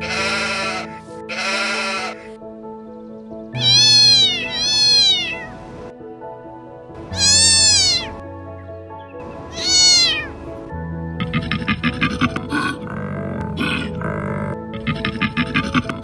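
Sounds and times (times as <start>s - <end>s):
cat meowing: 0.0s - 2.3s, 3.6s - 5.6s, 7.1s - 8.2s, 9.5s - 10.3s
background music with held notes: 0.0s - 16.0s.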